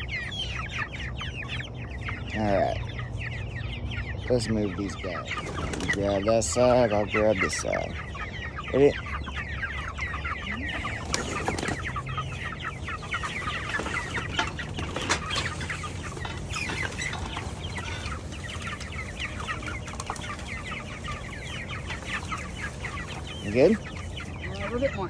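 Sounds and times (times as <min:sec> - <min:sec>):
chickens peeping and clucking: 0:00.0 - 0:25.0.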